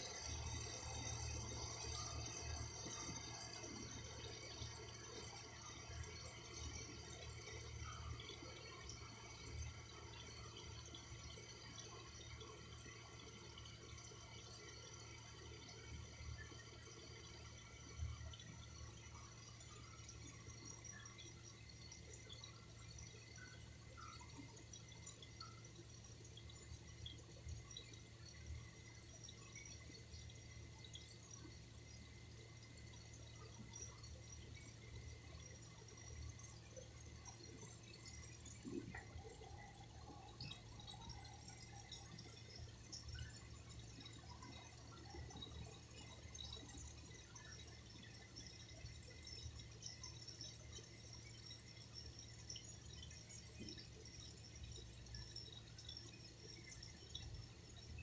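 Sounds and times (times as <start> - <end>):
faint running water: 0.0 - 58.0
water dripping: 32.8 - 58.0.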